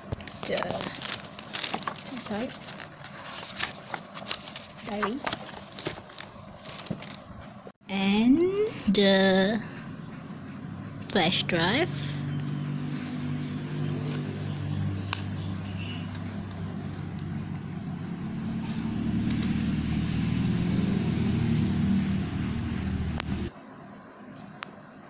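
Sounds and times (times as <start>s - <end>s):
vehicle engine running: 9.2s - 23.5s.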